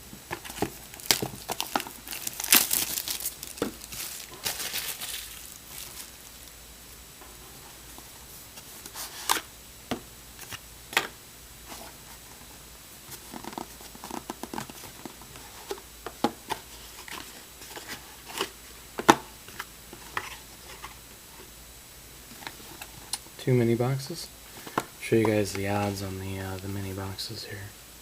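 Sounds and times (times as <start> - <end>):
cardboard packaging clicks and crinkles: 0.1 - 6.6, 13.1 - 21.0.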